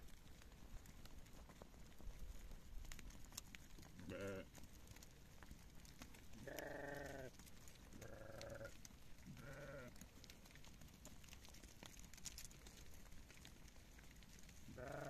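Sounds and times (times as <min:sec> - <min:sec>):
sheep bleating: 0:04.0 - 0:04.5, 0:06.4 - 0:07.4, 0:08.0 - 0:10.0, 0:14.8 - 0:15.0.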